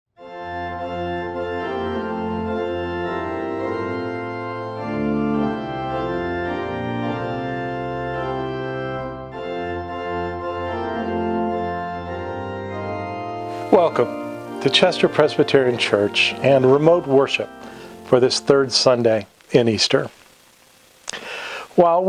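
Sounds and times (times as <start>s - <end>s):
organ playing slow chords: 0.2s - 20.1s.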